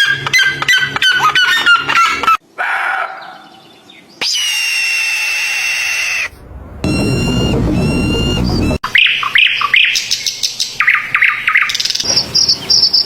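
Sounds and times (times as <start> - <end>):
long high-pitched bird call: 4.2 - 6.3.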